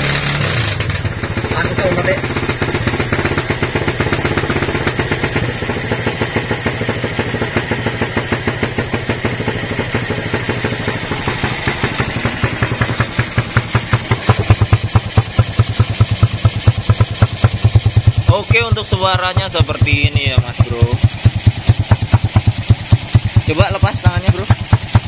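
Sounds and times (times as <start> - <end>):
motorcycle exhaust pulses: 0.0 - 25.0.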